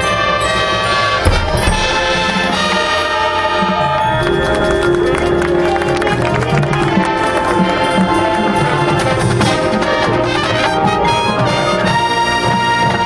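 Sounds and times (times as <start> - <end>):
brass section playing chords: 0.0 - 13.0
drum line strikes: 1.1 - 5.1.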